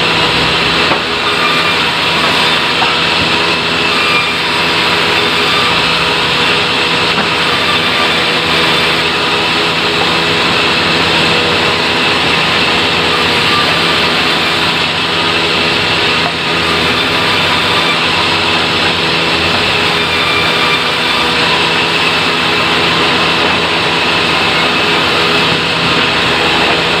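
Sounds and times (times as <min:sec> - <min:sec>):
saw cutting wood: 0:00.0 - 0:27.0
sawmill engine droning: 0:00.0 - 0:27.0.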